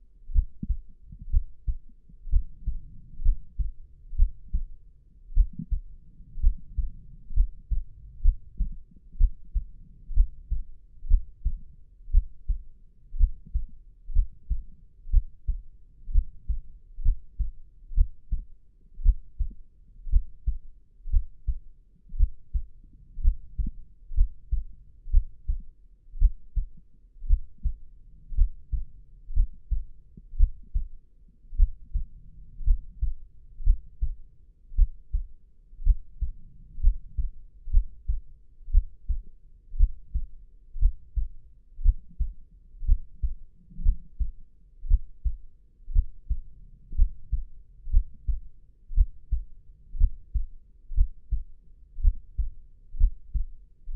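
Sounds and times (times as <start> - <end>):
human heartbeat thumps: 0.3 - 25.6, 26.2 - 26.7, 27.3 - 31.0, 31.6 - 34.2, 34.8 - 53.9.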